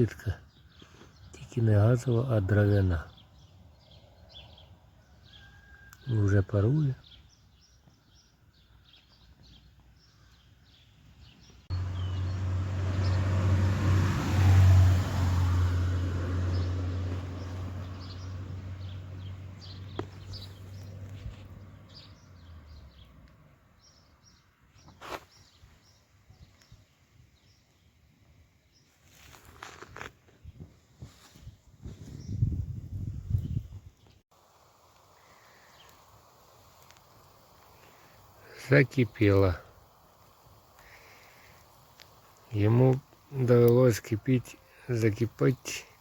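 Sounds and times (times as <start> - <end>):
small birds chirping: 0.0 - 13.5, 16.4 - 46.0
vehicle engine humming: 11.7 - 23.0.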